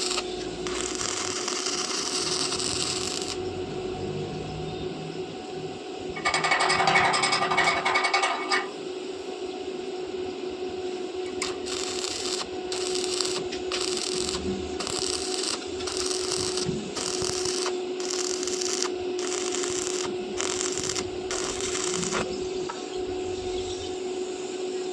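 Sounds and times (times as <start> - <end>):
rhythmic hissing scraping strokes: 0.0 - 3.6, 11.4 - 22.7
steady electrical hum: 0.0 - 6.2, 8.9 - 24.2.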